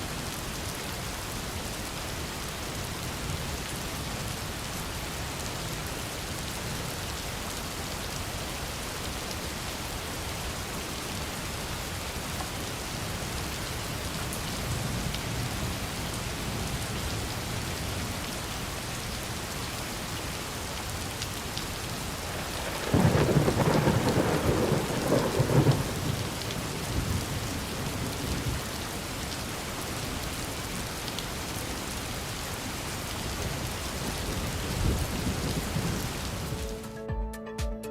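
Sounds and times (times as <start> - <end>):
steady rain falling: 0.0 - 36.8
thunder clap and rumble: 22.3 - 28.6.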